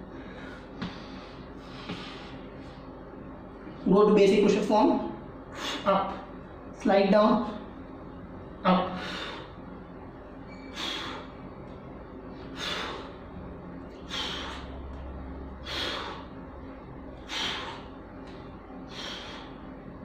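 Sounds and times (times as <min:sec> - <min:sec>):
man exhaling sharply through nose: 0:14.0 - 0:14.8, 0:15.6 - 0:16.3.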